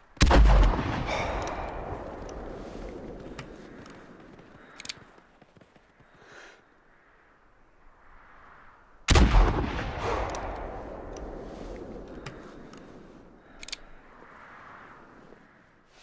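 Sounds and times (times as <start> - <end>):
rifle shot with rolling echo: 0.2 - 3.7, 9.1 - 12.4.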